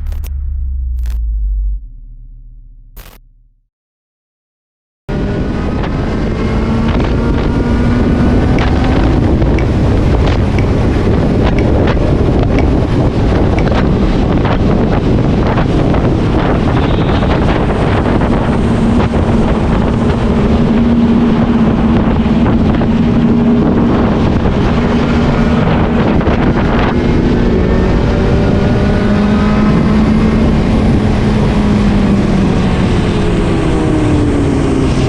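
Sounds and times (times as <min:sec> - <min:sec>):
wind noise on microphone: 0:05.1 - 0:35.0
motorcycle engine running: 0:06.4 - 0:26.9.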